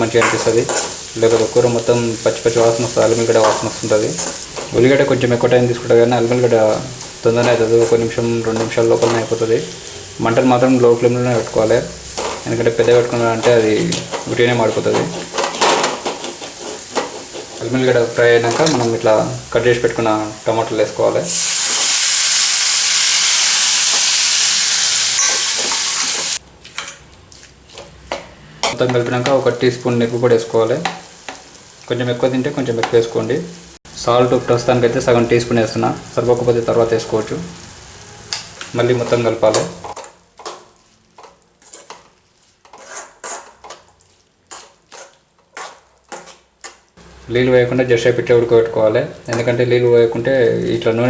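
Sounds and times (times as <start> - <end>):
tomatoes sizzling in hot oil: 0.0 - 26.5, 28.9 - 42.7
spoon scraping a pan: 3.3 - 4.9, 11.3 - 18.9, 38.2 - 46.8.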